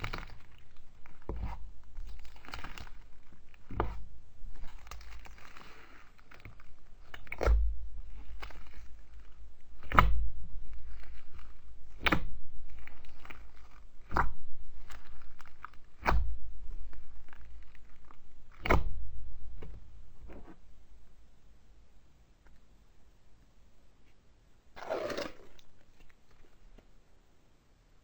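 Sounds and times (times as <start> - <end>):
slime crackling: 0.0 - 18.9.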